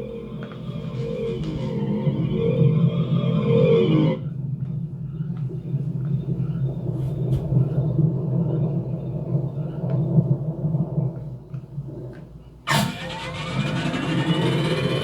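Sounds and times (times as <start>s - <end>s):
faint clicks and ticks: 0.0s - 2.7s, 4.4s - 12.6s
deep ambient rumble: 0.0s - 15.0s.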